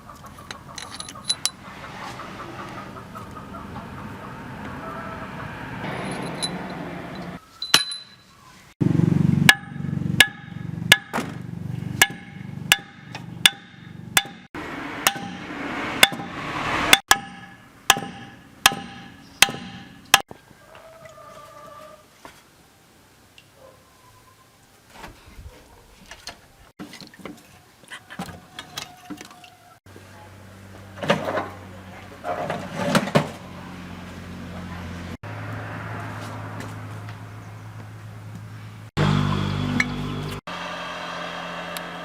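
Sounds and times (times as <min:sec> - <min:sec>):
hammer striking metal: 0:05.8 - 0:08.2, 0:09.5 - 0:11.4, 0:12.0 - 0:20.3.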